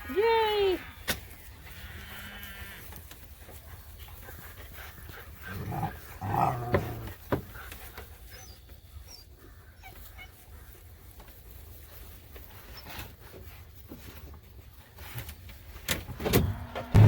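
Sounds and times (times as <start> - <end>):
dog panting: 3.6 - 8.5.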